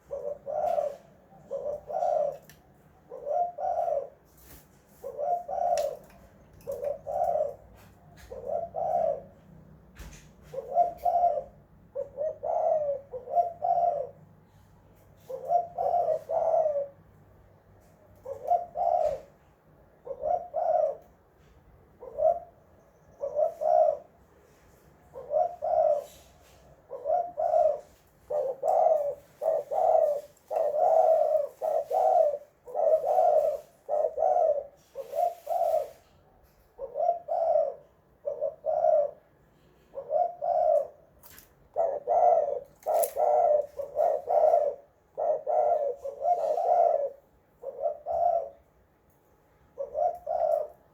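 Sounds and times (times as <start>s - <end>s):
dove cooing: 0.0s - 48.8s, 49.6s - 50.9s.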